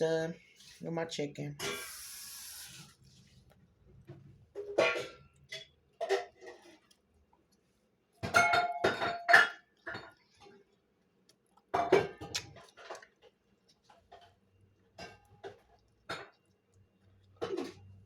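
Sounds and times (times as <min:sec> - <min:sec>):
dishes and utensils clattering: 0:04.5 - 0:06.8, 0:08.2 - 0:10.6, 0:17.4 - 0:17.9.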